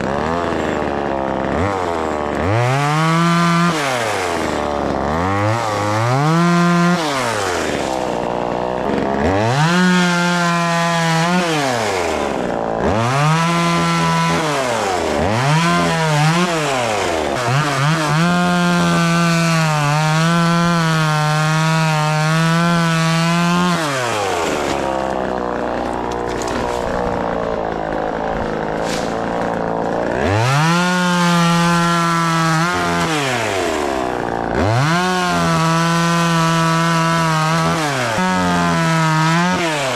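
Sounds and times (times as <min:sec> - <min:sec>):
chainsaw revving while cutting wood: 0:00.0 - 0:39.9.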